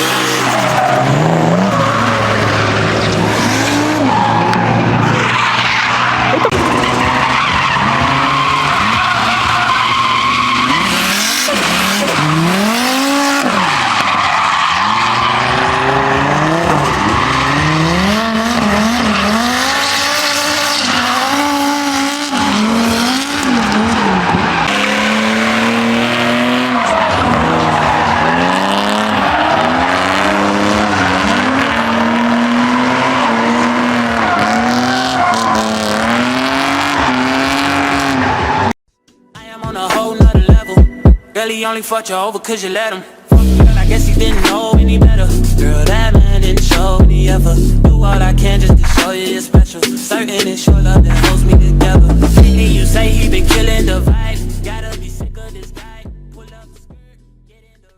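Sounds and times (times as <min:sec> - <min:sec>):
car engine revving: 0:00.0 - 0:38.8, 0:43.3 - 0:49.0, 0:50.9 - 0:56.5
tyres screeching: 0:00.0 - 0:38.8.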